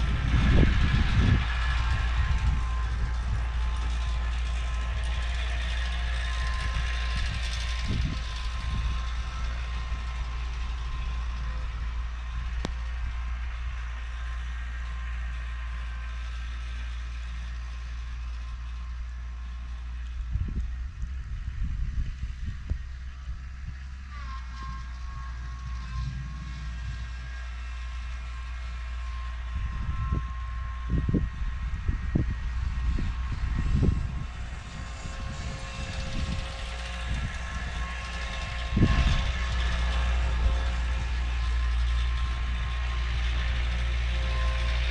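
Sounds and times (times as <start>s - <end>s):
wind gusting on microphone: 0.0s - 13.2s, 20.2s - 24.1s, 29.4s - 44.9s
quad bike engine droning: 0.0s - 44.9s.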